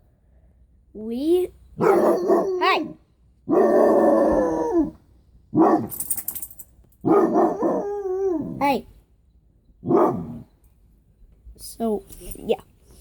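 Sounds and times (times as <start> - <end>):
dog barking and howling: 1.8 - 6.0, 7.0 - 8.7, 9.8 - 10.5.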